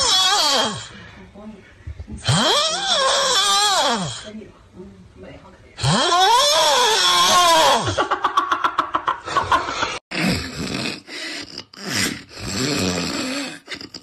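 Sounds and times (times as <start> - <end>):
people snoring: 2.2 - 4.3, 5.8 - 8.0, 9.7 - 14.0.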